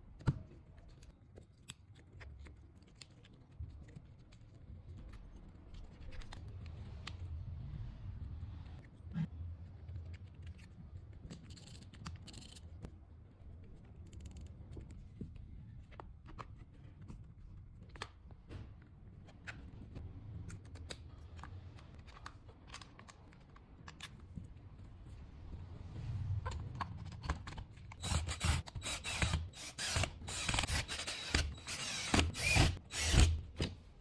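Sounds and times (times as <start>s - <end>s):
small tool parts clicking: 27.5s - 33.4s.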